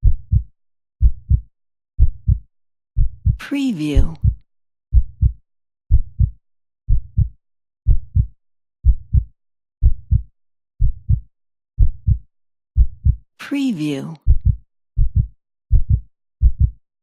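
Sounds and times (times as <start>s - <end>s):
heartbeat thumps: 0.0s - 1.4s, 2.0s - 2.4s, 3.0s - 3.4s, 4.0s - 7.3s, 7.9s - 8.3s, 8.9s - 11.2s, 11.8s - 12.2s, 12.8s - 13.2s, 14.3s - 16.8s.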